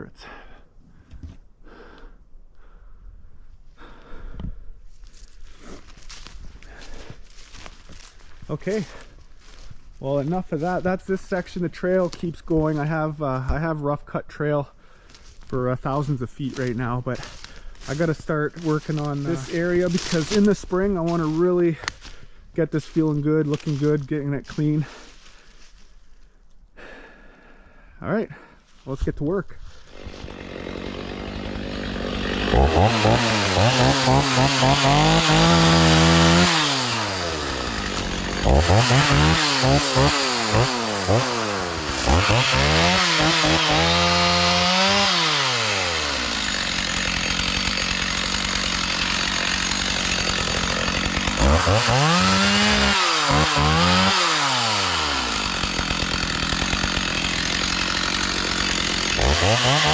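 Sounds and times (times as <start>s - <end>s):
chainsaw revving: 17.2s - 20.7s, 29.8s - 59.9s.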